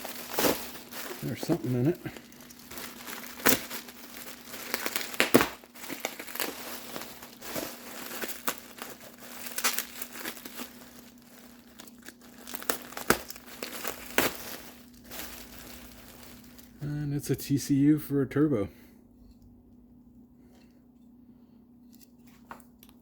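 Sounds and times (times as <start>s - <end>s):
packing material crinkling: 0.0s - 17.4s.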